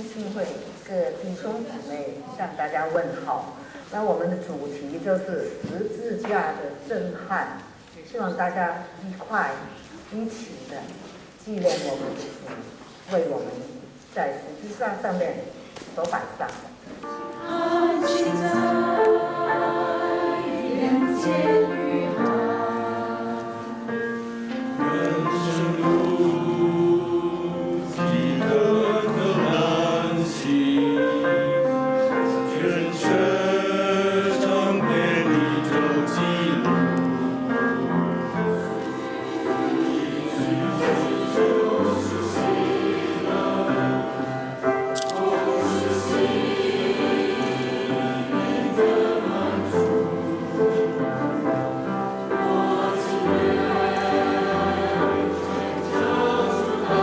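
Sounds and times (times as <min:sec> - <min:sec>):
choir singing a hymn: 0:17.0 - 0:57.0.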